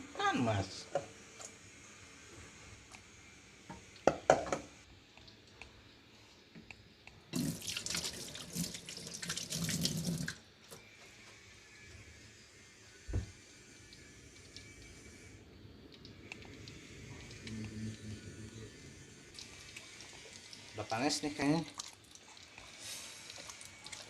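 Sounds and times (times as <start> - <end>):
water running: 7.3 - 10.4, 19.3 - 24.0.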